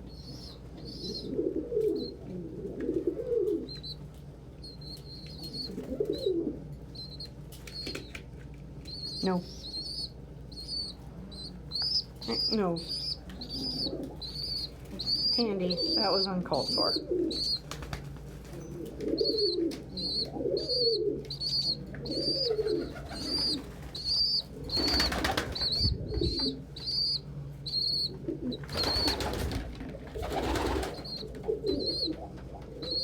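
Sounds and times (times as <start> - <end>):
pigeons cooing: 0.0 - 4.0, 4.6 - 8.2, 9.1 - 33.0
wings flapping: 17.2 - 19.9, 22.2 - 26.5, 28.6 - 33.0.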